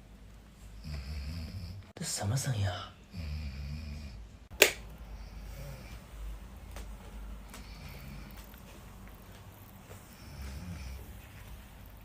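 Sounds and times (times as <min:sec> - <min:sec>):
woman snoring: 0:00.8 - 0:01.8, 0:03.1 - 0:04.2, 0:05.1 - 0:06.0, 0:07.5 - 0:08.5, 0:10.1 - 0:11.1.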